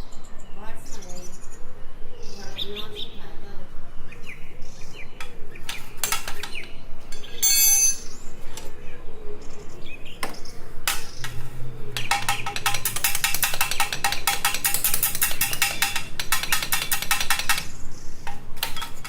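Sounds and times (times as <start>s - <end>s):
short metallic ring: 7.1s - 8.3s
sharp clicks: 12.0s - 17.8s.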